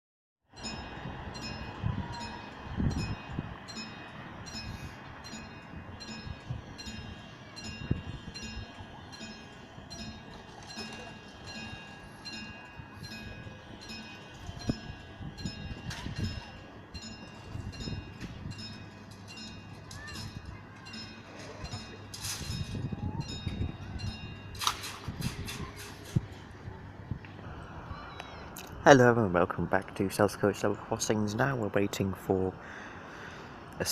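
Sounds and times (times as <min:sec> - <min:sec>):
level crossing warning alarm: 0:00.5 - 0:24.6
low thumps of wind or handling: 0:00.6 - 0:29.2.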